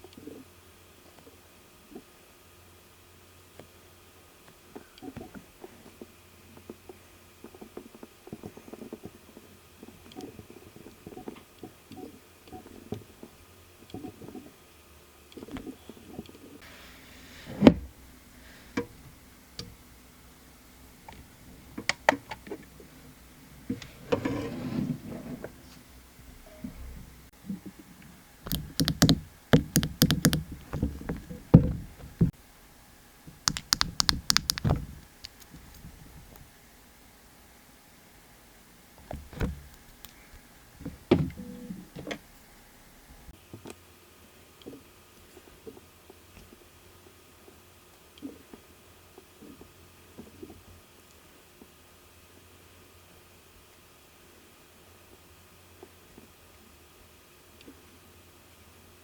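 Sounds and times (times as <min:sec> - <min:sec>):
bottles clicking and tapping: 0:28.5 - 0:31.5, 0:33.5 - 0:35.4.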